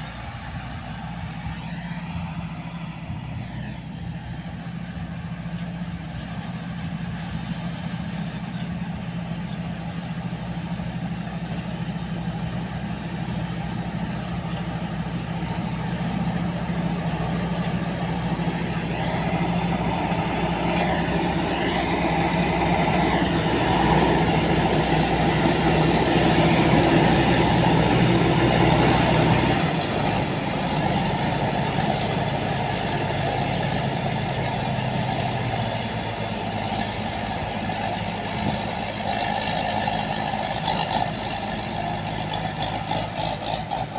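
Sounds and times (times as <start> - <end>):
combine harvester engine running: 0.0 - 43.9
brief high hisses: 7.1 - 8.4.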